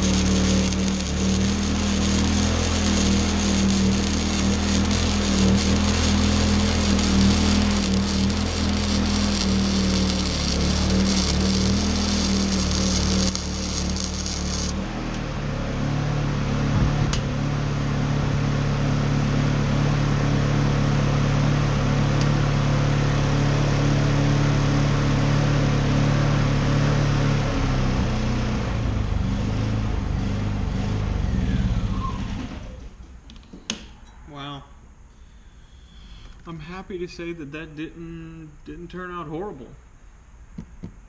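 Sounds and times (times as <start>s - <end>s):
welding arc crackle: 0.0s - 15.2s
generator engine running: 0.0s - 31.5s.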